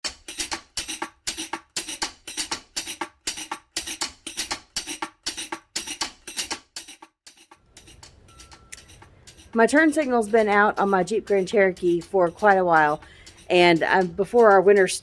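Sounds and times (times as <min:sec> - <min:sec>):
fast percussive beat music: 0:00.0 - 0:15.0
person talking: 0:09.5 - 0:15.0.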